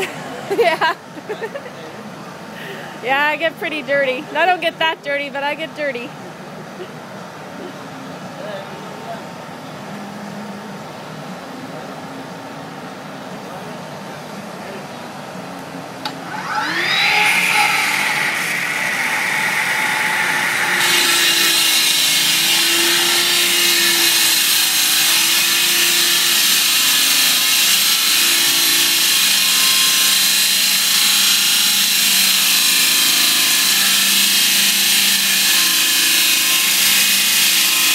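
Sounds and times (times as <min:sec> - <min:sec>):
concrete saw cutting: 0:16.0 - 0:37.9.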